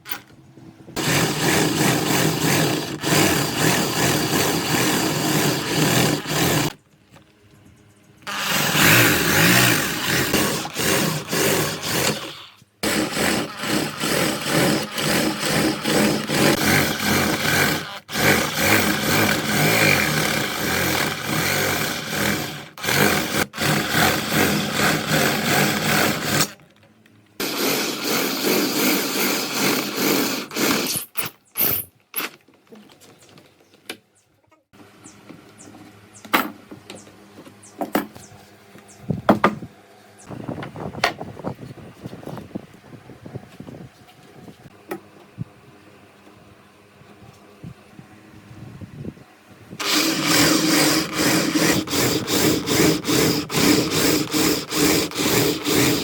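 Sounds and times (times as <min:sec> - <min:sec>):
power tools running on wood: 0:01.0 - 0:06.8, 0:08.2 - 0:26.6, 0:27.4 - 0:31.0, 0:49.8 - 0:56.0.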